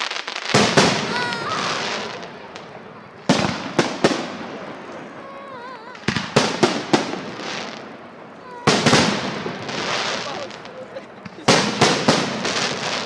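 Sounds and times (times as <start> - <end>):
firework bangs with echo: 0.0 - 13.0.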